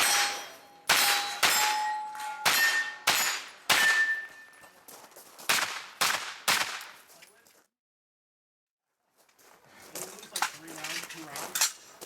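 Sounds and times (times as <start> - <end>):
carbine gunshots: 0.0 - 4.2, 5.5 - 7.0
steel target plate ringing: 0.0 - 4.6.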